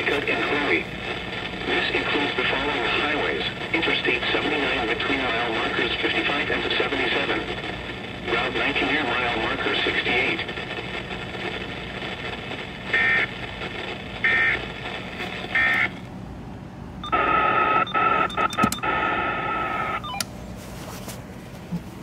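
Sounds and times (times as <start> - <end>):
radio data bursts: 0.0 - 16.0, 17.0 - 20.1
radio hiss: 0.0 - 16.0, 17.1 - 20.0.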